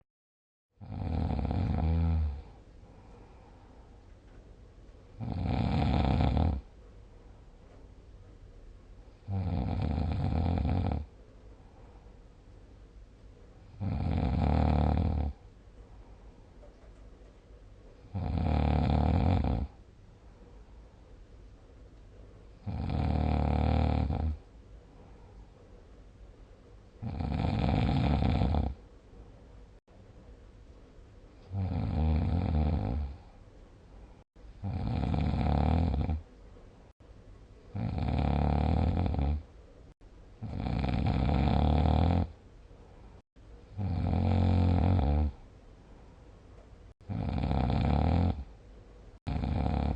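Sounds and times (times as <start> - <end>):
person snoring: 0.8 - 3.4, 5.2 - 6.7, 9.2 - 11.1, 13.7 - 15.4, 18.1 - 19.8, 22.6 - 24.4, 27.0 - 28.8, 31.5 - 33.3, 34.6 - 36.2, 37.7 - 39.4, 40.4 - 42.3, 43.8 - 45.4, 47.1 - 48.5, 49.2 - 49.9
quiet breathing: 0.8 - 29.9, 31.2 - 37.0, 37.6 - 49.9.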